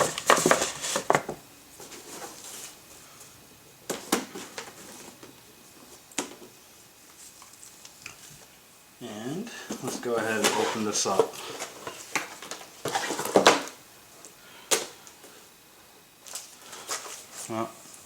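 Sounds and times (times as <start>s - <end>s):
paper and cardboard rustling: 0.0s - 2.8s, 9.7s - 13.8s.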